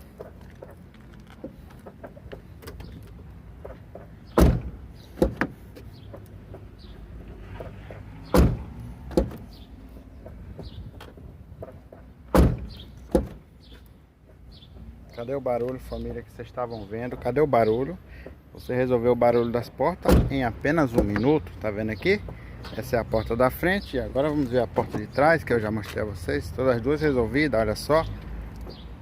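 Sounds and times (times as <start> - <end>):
car door shutting thump: 4.4 - 5.6, 8.3 - 9.5, 12.3 - 13.4, 20.1 - 20.3.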